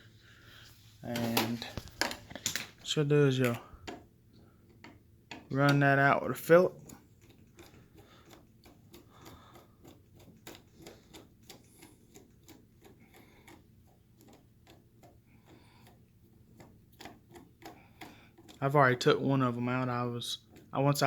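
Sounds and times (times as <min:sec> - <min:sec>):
screwdriver clicking: 0:06.8 - 0:18.6.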